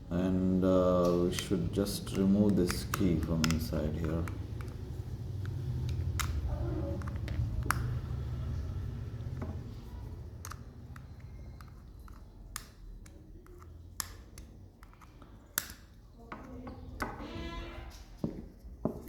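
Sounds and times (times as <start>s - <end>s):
plastic key fob clicks: 1.1s - 8.0s.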